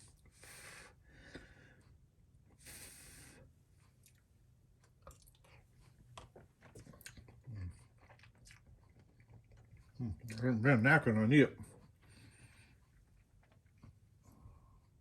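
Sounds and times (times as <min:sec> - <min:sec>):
person breathing: 0:00.4 - 0:01.9, 0:02.6 - 0:03.5
person chewing food: 0:03.8 - 0:10.6, 0:11.6 - 0:15.0.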